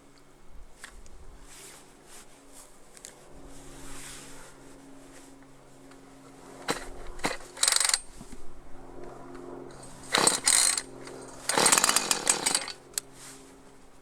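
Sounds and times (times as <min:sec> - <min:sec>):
chainsaw engine bursts: 0:06.7 - 0:08.0, 0:09.8 - 0:13.0.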